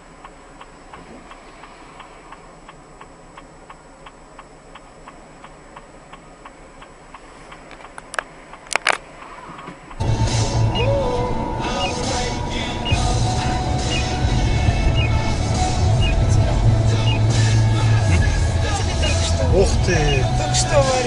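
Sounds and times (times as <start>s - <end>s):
turn-signal relay ticking: 0.0s - 21.0s
sharp clicks: 0.2s - 10.0s
loud rumbling noise: 9.9s - 21.0s.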